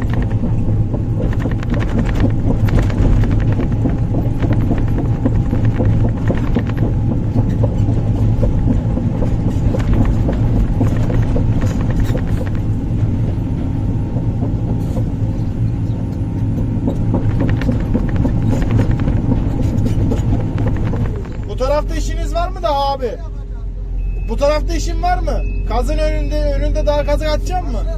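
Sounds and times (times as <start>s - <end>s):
digging knocks and clanks: 0.0s - 21.7s
excavator diesel engine running: 0.0s - 27.9s.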